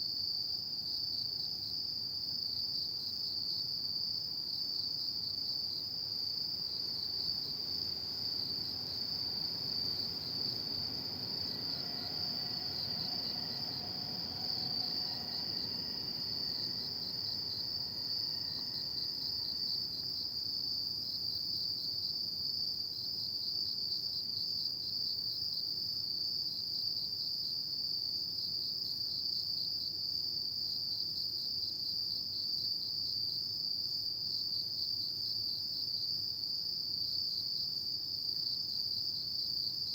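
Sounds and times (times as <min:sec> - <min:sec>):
crickets trilling: 0:07.0 - 0:20.2.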